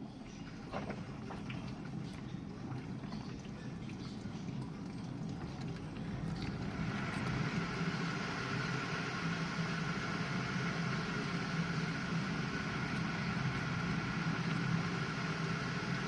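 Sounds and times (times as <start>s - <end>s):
dishwasher motor hum: 0.0s - 16.0s.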